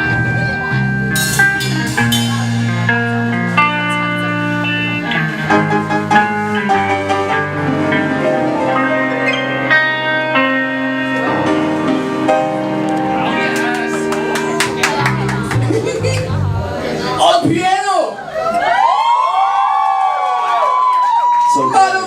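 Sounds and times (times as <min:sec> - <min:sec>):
guitar playing held notes: 0:00.0 - 0:17.2
bass line: 0:00.0 - 0:17.6.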